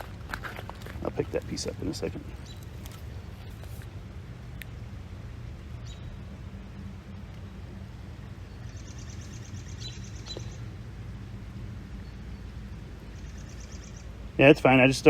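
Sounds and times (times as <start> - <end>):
steady low rumble: 0.0 - 15.0
bird chirps: 1.6 - 3.8, 5.8 - 6.3, 8.3 - 10.8, 12.0 - 14.2
high bird trill: 1.7 - 3.8, 8.3 - 10.9, 11.9 - 14.3.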